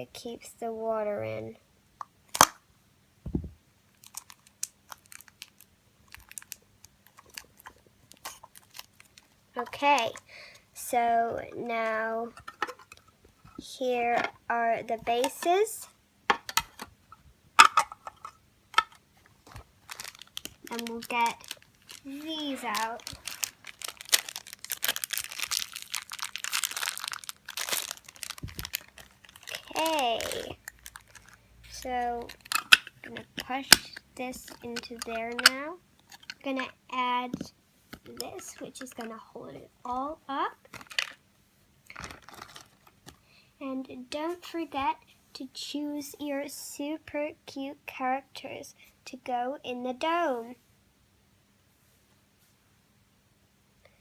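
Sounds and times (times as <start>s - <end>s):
plastic packaging crinkling: 3.9s - 10.2s, 17.6s - 36.7s, 38.0s - 39.2s, 40.6s - 41.2s, 41.9s - 43.2s
plastic pieces clicking and snipping: 17.6s - 36.7s.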